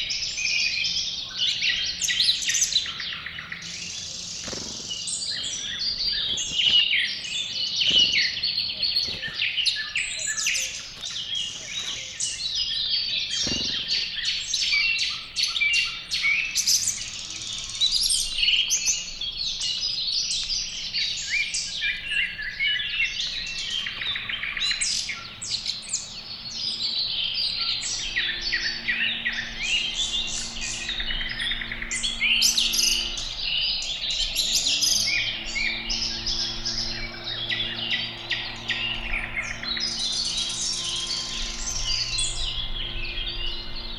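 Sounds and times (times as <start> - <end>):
songbirds chirping: 0.0 - 43.9
faint low hum: 23.3 - 43.9.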